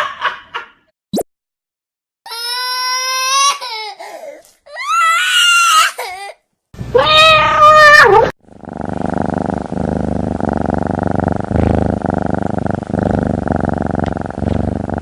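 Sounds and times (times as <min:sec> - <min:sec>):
wailing cries: 0:04.7 - 0:06.3.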